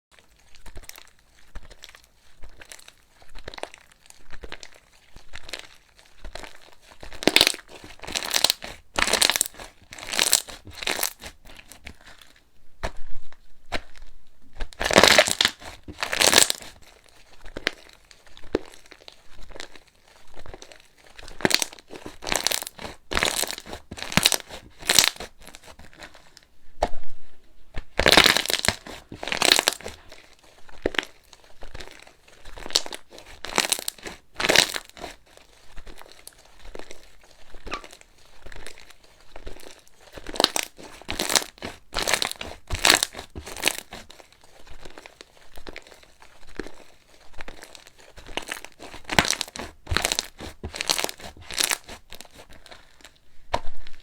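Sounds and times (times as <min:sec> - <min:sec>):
slime crackling and crunching: 0:00.1 - 0:27.0, 0:27.7 - 0:54.0.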